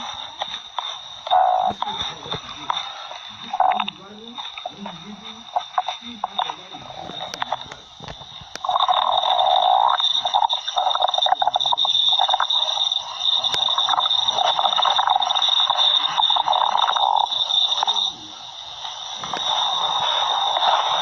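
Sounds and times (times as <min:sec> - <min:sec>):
steady high whine: 0:00.0 - 0:21.0
cartoon stomach growling: 0:05.6 - 0:12.4.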